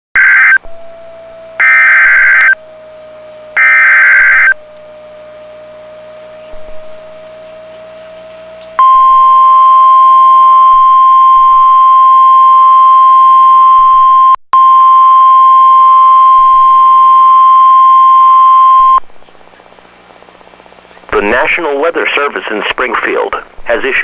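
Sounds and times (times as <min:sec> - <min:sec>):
loud steady high beep: 0:00.2 - 0:01.0, 0:01.6 - 0:02.6, 0:03.6 - 0:04.6, 0:08.8 - 0:19.0.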